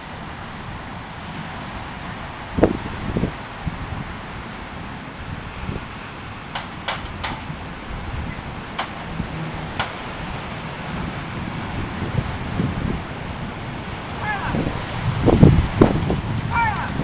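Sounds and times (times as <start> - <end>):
wind rushing: 2.5 - 4.2, 10.1 - 17.0.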